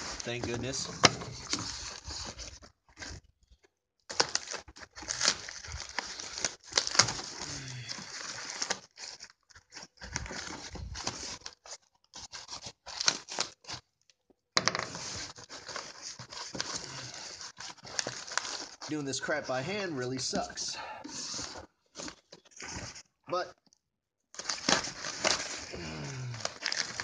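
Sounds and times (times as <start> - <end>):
packaging being torn: 0.0 - 3.2, 4.1 - 13.9, 14.8 - 19.0, 24.4 - 27.0.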